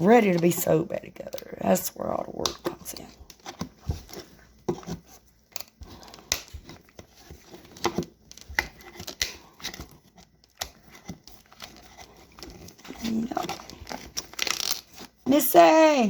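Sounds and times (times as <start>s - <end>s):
vinyl rustling: 1.5s - 16.0s
vinyl upholstery being torn: 5.6s - 15.2s.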